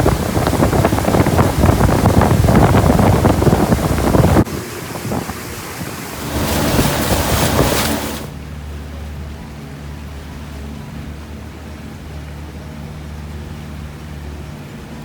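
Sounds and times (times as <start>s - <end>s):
wind on microphone: 0.0s - 8.4s
water rushing past boat: 0.0s - 15.0s
low engine hum: 6.0s - 15.0s.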